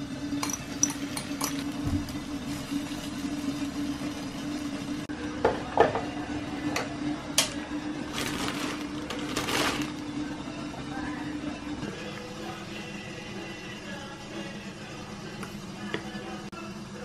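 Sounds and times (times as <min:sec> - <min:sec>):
dishes and utensils clinking: 0:00.4 - 0:01.8.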